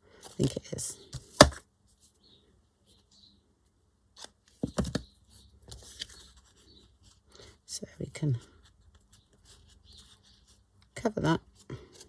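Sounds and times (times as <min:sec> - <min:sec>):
handling knocks and rustles: 0:04.2 - 0:06.4.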